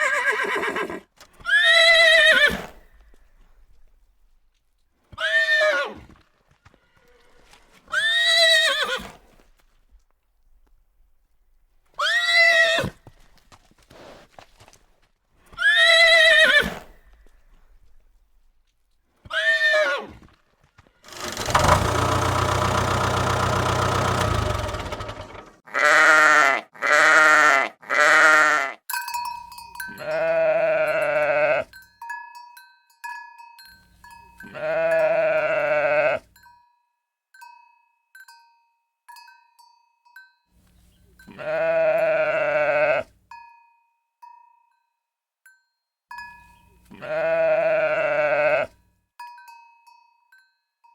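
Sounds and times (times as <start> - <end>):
bleating: 0.0 - 2.7, 7.9 - 9.2, 12.0 - 13.0, 15.5 - 16.8, 25.6 - 28.8, 29.9 - 31.7, 34.4 - 36.3, 41.2 - 43.1, 46.8 - 48.8
farm animal calls: 21.0 - 28.8, 40.7 - 43.1, 46.5 - 48.8.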